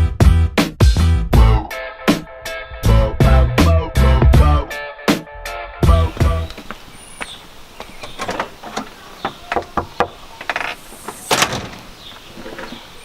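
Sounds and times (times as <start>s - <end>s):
knocks and clunks: 7.8s - 12.9s.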